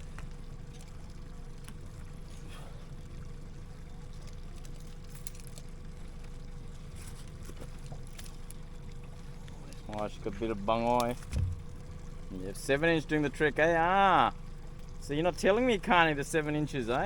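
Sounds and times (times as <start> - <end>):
motor humming: 0.0 - 17.0
light clicks and taps: 7.2 - 11.8.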